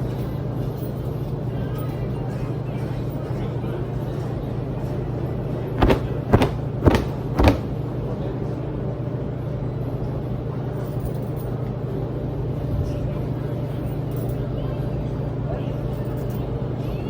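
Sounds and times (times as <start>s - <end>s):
washers and dryers humming: 0.0s - 9.4s
sharp knocks: 5.8s - 7.8s.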